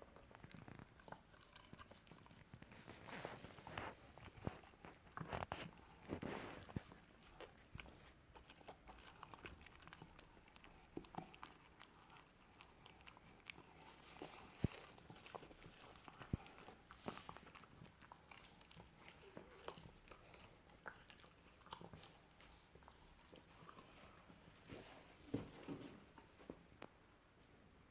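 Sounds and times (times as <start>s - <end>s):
puppy chewing a treat: 0.0s - 25.5s.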